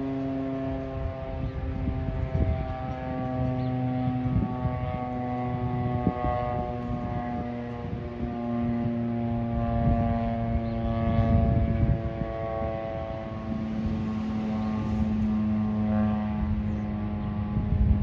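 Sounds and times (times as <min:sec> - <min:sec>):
fire siren chord: 0:00.0 - 0:18.0.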